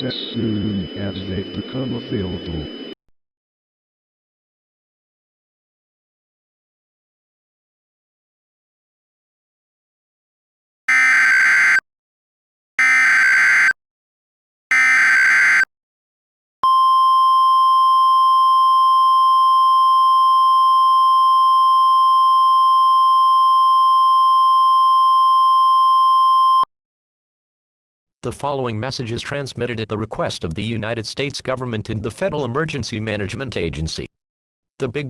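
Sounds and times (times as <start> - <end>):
screeching digital data bursts: 12.8 - 13.7, 14.7 - 15.6.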